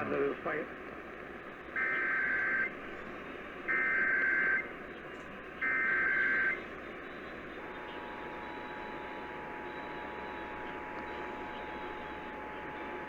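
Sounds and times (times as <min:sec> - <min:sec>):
radio hiss: 0:00.0 - 0:00.8.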